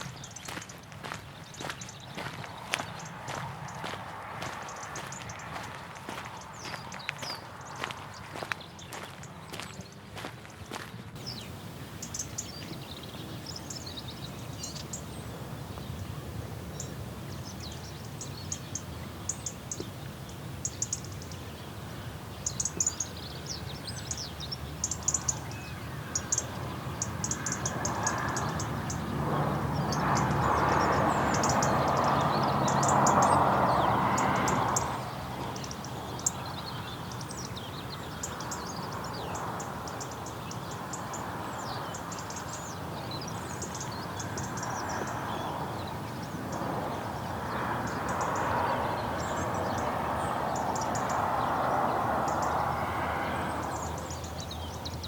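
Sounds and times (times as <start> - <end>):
rushing noise with low hum: 0.0 - 55.0
small birds chirping: 0.0 - 55.0
outdoor background hiss: 11.2 - 29.9.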